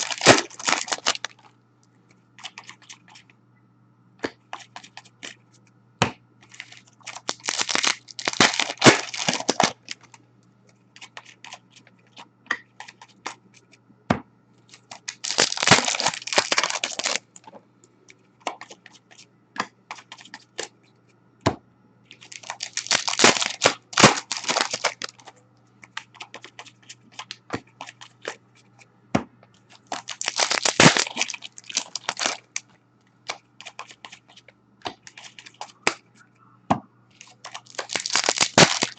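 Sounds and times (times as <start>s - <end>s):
card pack wrappers tearing: 0.0s - 1.4s, 6.5s - 10.1s, 14.7s - 17.3s, 22.1s - 25.3s, 29.7s - 32.6s, 37.1s - 38.9s.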